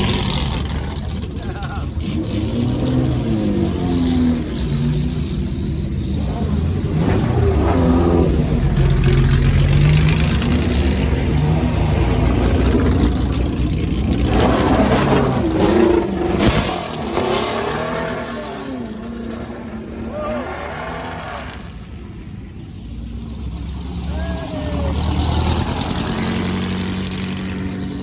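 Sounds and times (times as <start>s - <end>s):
racing car engines passing: 0.0s - 28.0s.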